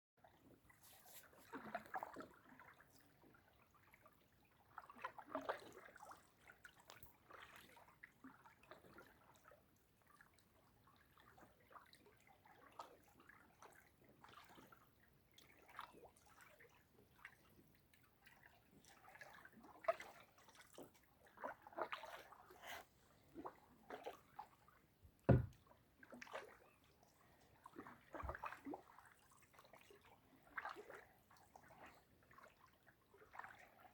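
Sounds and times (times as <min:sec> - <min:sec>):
paddle splashing in water: 0:00.8 - 0:02.8, 0:04.7 - 0:06.0, 0:19.3 - 0:24.5, 0:25.3 - 0:26.6, 0:27.7 - 0:29.9.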